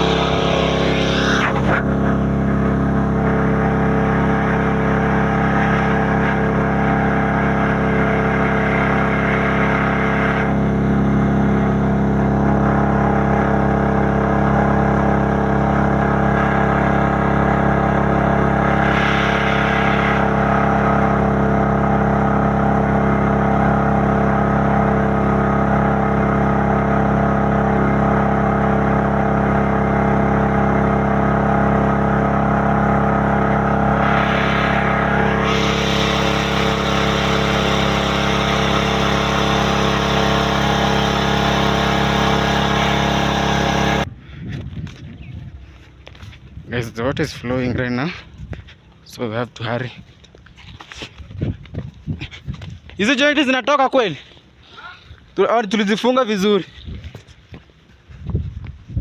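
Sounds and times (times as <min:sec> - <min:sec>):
engine water pump running: 0:00.0 - 0:46.6.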